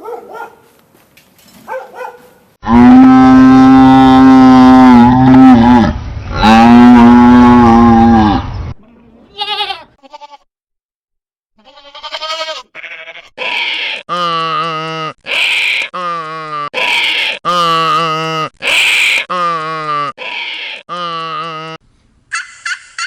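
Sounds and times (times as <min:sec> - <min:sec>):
cow mooing: 0:02.6 - 0:08.4.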